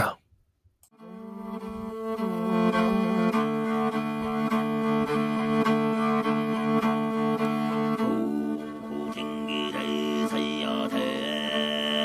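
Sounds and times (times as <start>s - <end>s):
throat singing: 0.0s - 0.2s.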